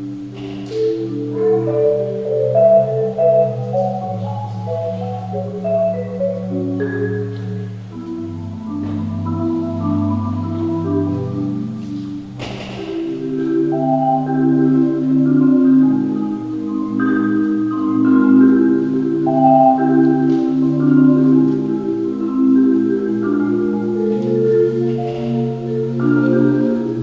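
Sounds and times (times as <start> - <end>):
marimba music: 0.0 - 27.0
sharp percussive hit: 12.4 - 13.4.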